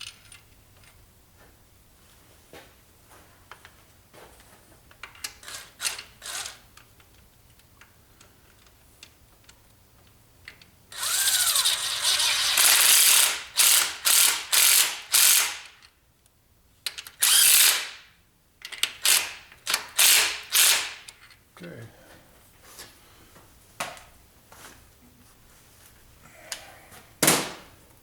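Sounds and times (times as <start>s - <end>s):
ratchet wrench clicking: 11.0s - 15.9s, 17.2s - 18.0s, 18.8s - 21.2s.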